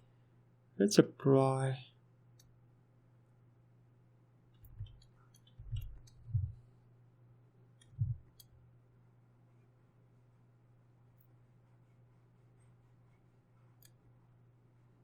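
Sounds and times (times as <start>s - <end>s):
steady low hum: 0.0s - 15.0s
soft low thumps: 4.6s - 5.0s, 5.6s - 6.6s, 7.9s - 8.3s
computer mouse clicks: 4.6s - 6.5s, 7.8s - 8.5s, 13.8s - 14.0s.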